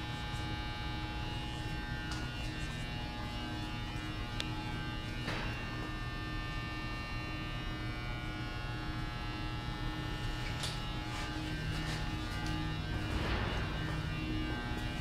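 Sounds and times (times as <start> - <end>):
electrical hum and buzz: 0.0 - 15.0.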